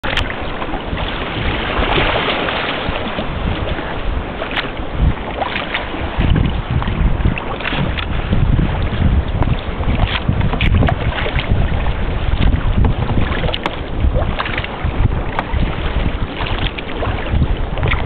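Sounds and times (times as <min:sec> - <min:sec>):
small water splashes: 0:00.0 - 0:18.0
wind buffeting microphone: 0:00.0 - 0:18.0.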